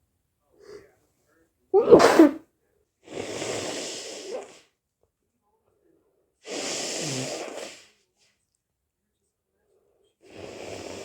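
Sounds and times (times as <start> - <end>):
nose blow: 1.8 - 2.4
person sneezing loudly: 1.8 - 2.4.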